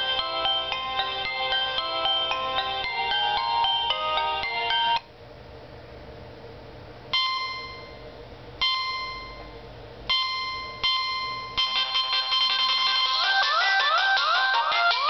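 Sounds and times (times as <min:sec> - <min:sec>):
phone ringtone chimes: 0:00.0 - 0:05.0, 0:07.2 - 0:08.0, 0:08.6 - 0:09.5, 0:10.1 - 0:15.0.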